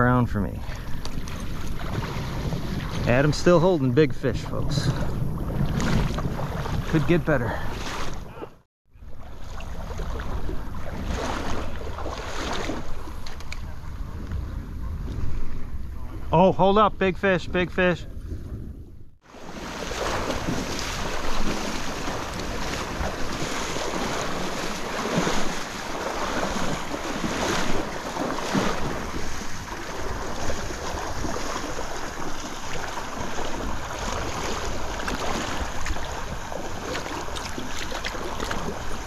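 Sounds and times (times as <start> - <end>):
wind buffeting microphone: 0.0 - 39.0
short splashes or knocks: 1.0 - 3.4, 4.3 - 8.5, 9.2 - 13.6, 19.3 - 39.0
stream water rushing: 19.3 - 39.0.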